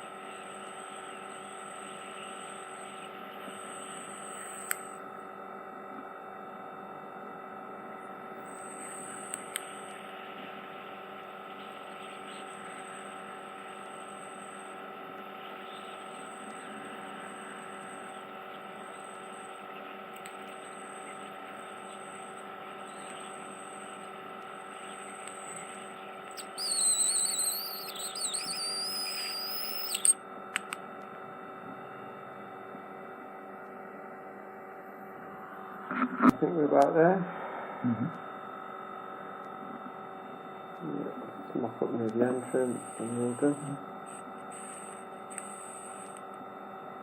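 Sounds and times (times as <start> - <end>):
suction machine humming: 8.4 - 30.2, 40.8 - 46.3
faint high hiss: 26.4 - 30.2
wavering high squeal: 26.4 - 30.2
sharp click: 26.4 - 30.8.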